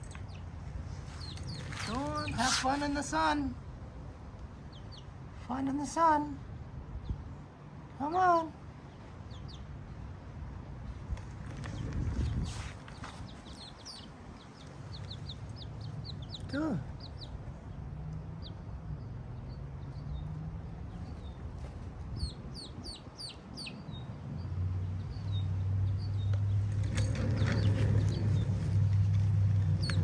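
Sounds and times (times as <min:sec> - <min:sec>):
chicks peeping: 0:11.2 - 0:17.5, 0:20.9 - 0:24.0.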